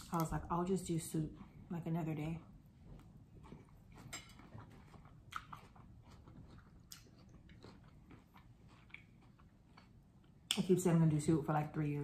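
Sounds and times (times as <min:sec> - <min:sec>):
faint chewing of food: 0:02.4 - 0:10.6
mouth clicks and crunches: 0:03.4 - 0:10.6.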